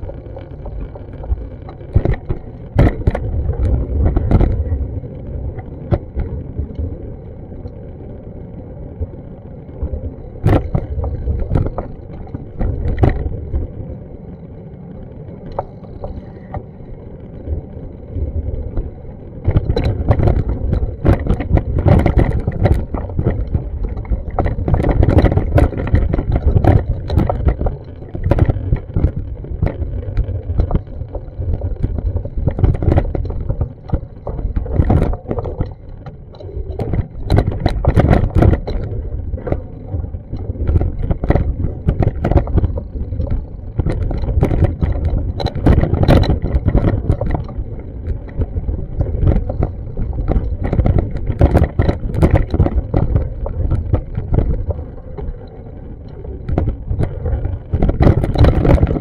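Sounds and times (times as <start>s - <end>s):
steady low street rumble: 0.0s - 59.0s
knocks and clicks: 19.5s - 39.6s, 40.3s - 54.8s, 56.5s - 59.0s.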